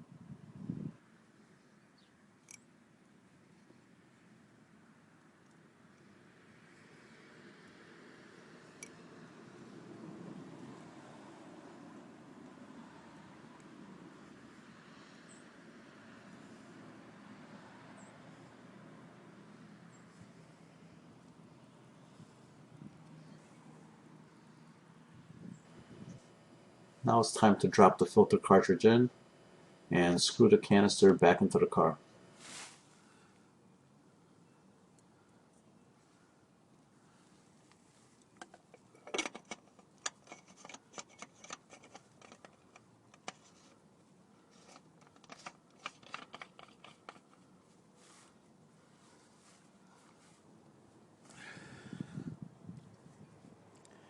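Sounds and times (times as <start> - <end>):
faint hum and hiss: 0.0 - 54.0
light clicks and taps: 44.5 - 47.5.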